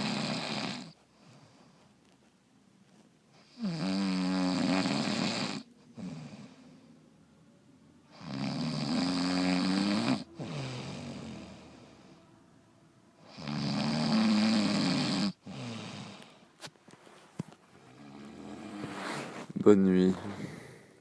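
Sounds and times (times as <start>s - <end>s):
loud snoring: 0.0s - 1.0s, 3.4s - 6.6s, 8.1s - 12.2s, 13.2s - 16.4s, 17.9s - 19.2s.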